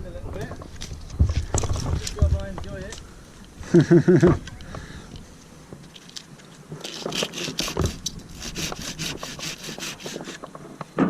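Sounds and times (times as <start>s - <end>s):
hand saw cutting wood: 6.8s - 10.4s.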